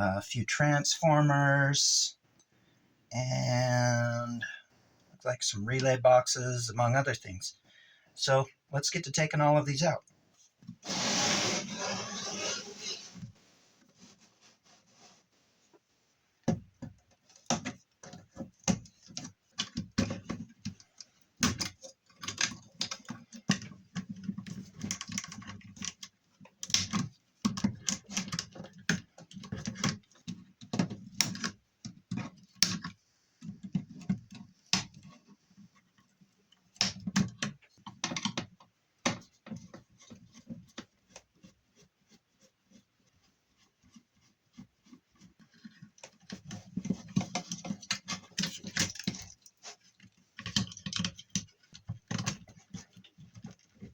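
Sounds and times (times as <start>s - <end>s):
handling rattles: 44.8s - 53.9s.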